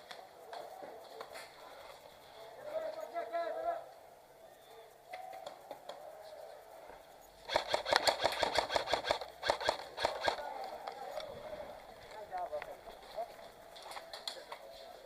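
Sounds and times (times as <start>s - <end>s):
airsoft gun firing rapid shots: 7.4s - 10.6s.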